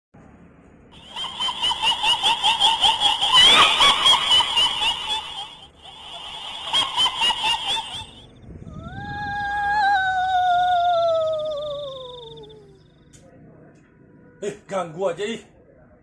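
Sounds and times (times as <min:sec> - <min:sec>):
shrill female cackling laugh: 0:01.0 - 0:08.3.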